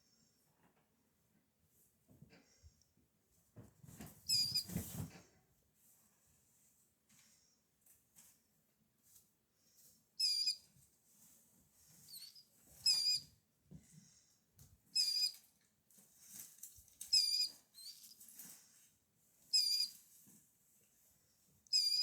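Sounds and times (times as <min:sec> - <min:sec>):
bird chicks peeping: 0:04.3 - 0:04.6, 0:12.1 - 0:13.2, 0:15.0 - 0:15.4, 0:17.1 - 0:18.1, 0:19.5 - 0:20.0.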